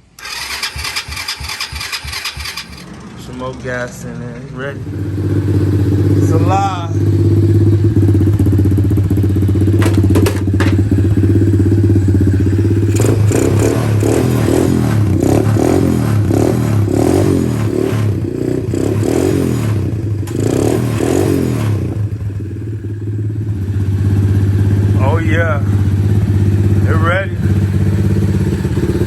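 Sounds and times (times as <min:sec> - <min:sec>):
small engine revving: 0:00.0 - 0:03.0, 0:09.7 - 0:22.4.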